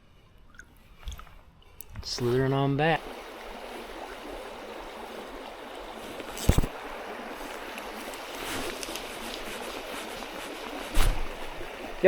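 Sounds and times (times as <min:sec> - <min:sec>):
creek water running: 0:02.0 - 0:12.0
sharp thump: 0:10.9 - 0:11.4.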